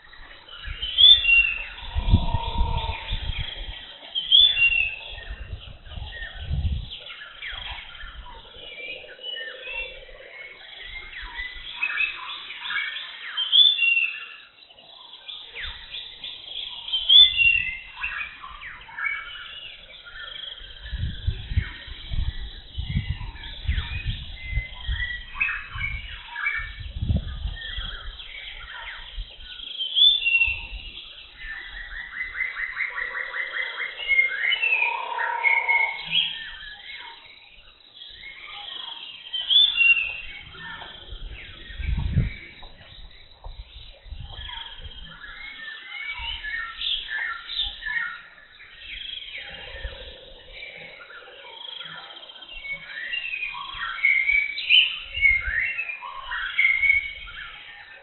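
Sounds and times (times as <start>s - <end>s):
birds chirping and calling: 0.0s - 58.0s
bird trill: 27.6s - 58.0s.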